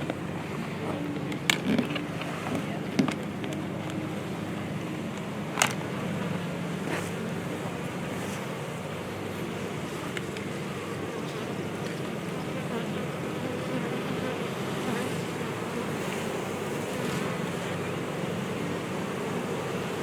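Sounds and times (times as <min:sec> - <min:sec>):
bee swarm buzzing: 0:08.1 - 0:20.0.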